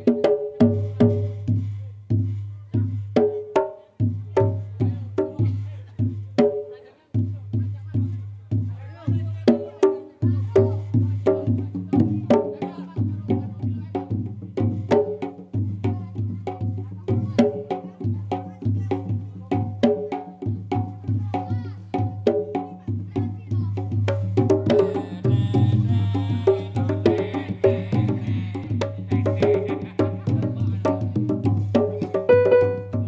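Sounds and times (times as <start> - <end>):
drums: 0.0 - 33.0
pitched percussion strikes: 32.0 - 33.0.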